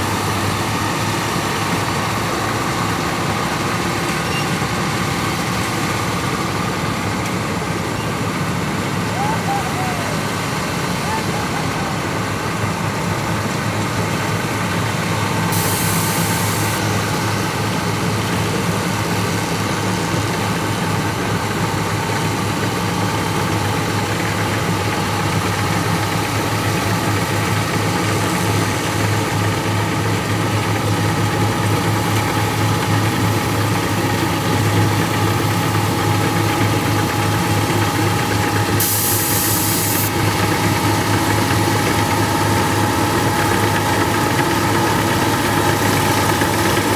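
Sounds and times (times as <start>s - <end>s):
diesel engine running: 0.0s - 46.9s
brief hisses: 15.6s - 16.8s, 38.8s - 40.1s.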